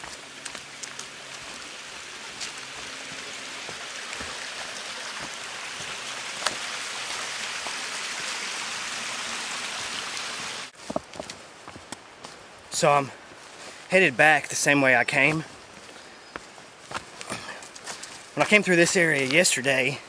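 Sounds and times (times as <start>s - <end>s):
stream water rushing: 0.0s - 10.8s.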